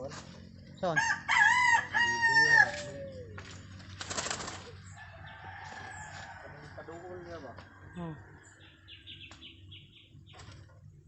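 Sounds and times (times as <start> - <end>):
rooster crowing: 0.9 - 3.4, 4.9 - 8.9.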